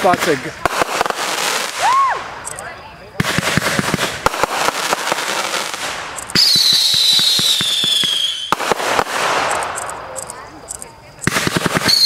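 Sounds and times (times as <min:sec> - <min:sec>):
firework bangs: 0:00.0 - 0:12.0
fireworks crackling pops: 0:00.0 - 0:12.0
firework whistle falling in pitch: 0:06.4 - 0:08.5.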